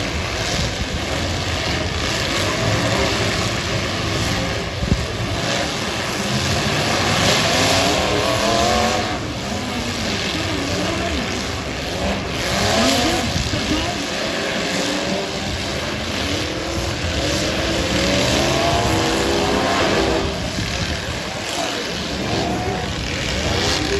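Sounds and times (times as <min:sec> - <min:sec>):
car engines revving: 0:00.0 - 0:23.9.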